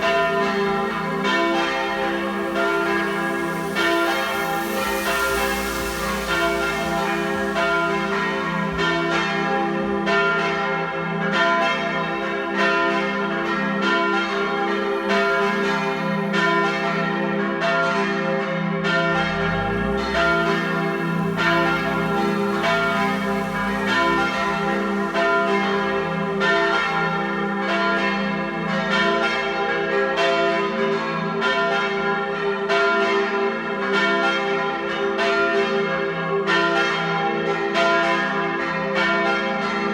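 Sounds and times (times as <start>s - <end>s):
church bells ringing: 0.0s - 39.9s.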